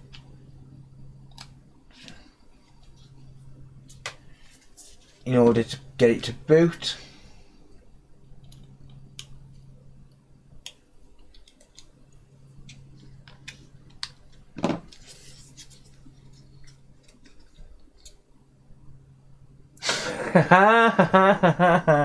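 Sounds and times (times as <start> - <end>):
steady low hum: 0.0 - 22.0
small parts clicking and tapping: 8.4 - 14.4.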